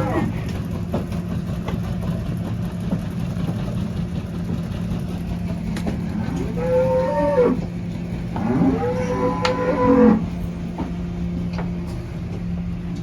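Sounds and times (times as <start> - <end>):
cow mooing: 0.0 - 0.5, 6.0 - 10.4
barn cleaner humming: 0.0 - 13.0.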